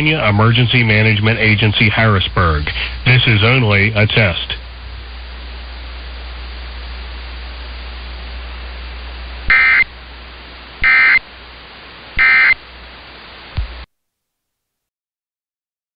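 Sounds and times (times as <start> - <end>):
radio hiss and hum: 0.0 - 13.9
buzzy digital data bursts: 0.4 - 9.9, 10.7 - 13.5.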